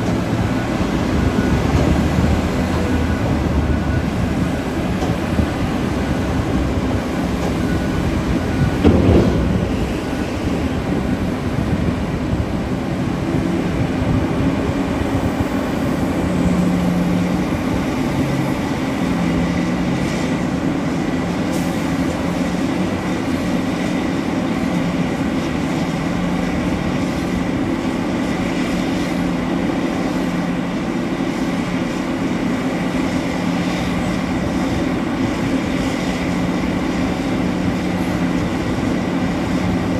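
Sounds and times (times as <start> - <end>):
diesel engines droning: 0.0 - 39.9
loud thump: 8.8 - 9.6.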